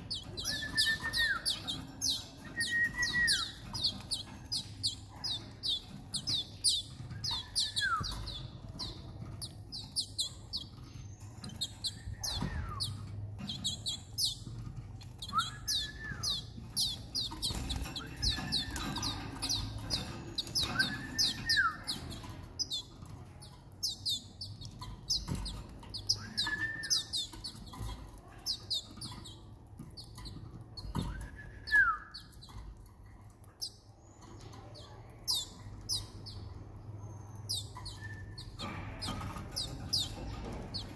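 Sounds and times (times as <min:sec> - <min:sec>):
canaries chirping: 0:00.0 - 0:40.9.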